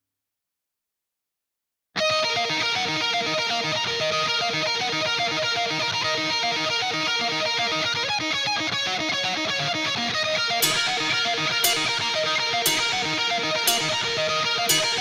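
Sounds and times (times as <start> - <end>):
guitar-driven background music: 2.0 - 15.0.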